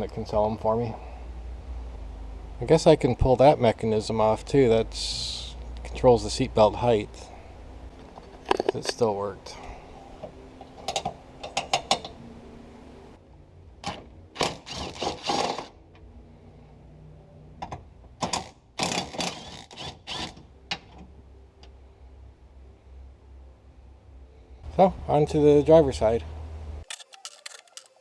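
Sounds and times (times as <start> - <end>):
ratchet-like metallic clicking: 26.9 - 28.0.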